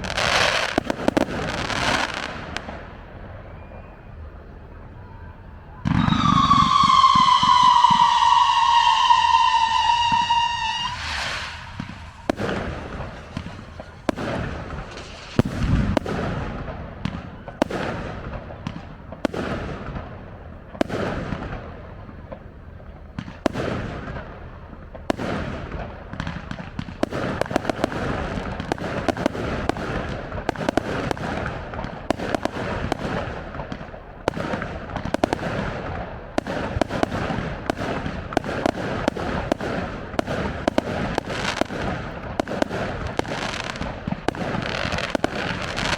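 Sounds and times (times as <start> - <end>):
fireworks crackling: 0.0 - 4.9, 5.8 - 45.9
firework shells bursting: 6.0 - 19.9.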